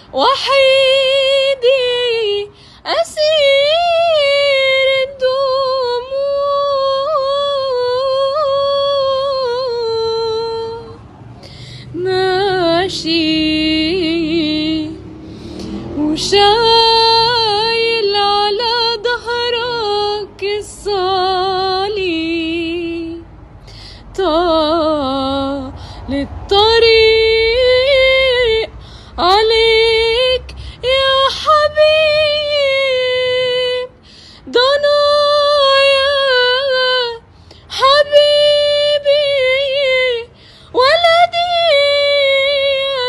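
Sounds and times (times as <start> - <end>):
woman singing a slow lament: 0.0 - 11.0, 11.8 - 23.3, 24.0 - 43.0.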